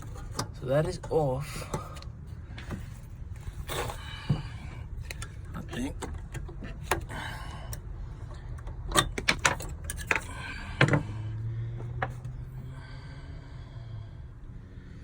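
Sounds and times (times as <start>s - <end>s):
low steady hum: 0.0s - 15.0s
metal parts and tools clicking: 7.7s - 11.0s.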